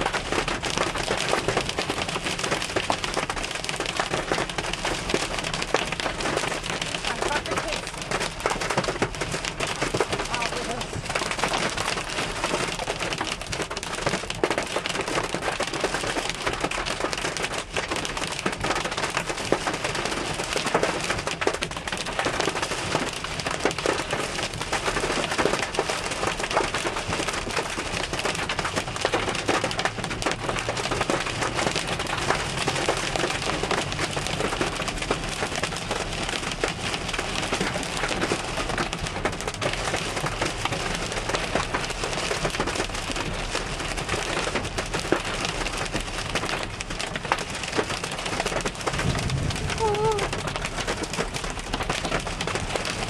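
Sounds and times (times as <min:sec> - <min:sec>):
hail drumming on car roof: 0:00.0 - 0:53.0.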